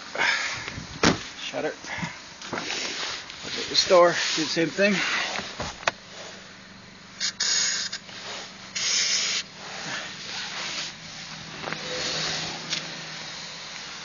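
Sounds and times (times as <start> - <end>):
aerosol can spraying hisses: 7.2 - 11.2.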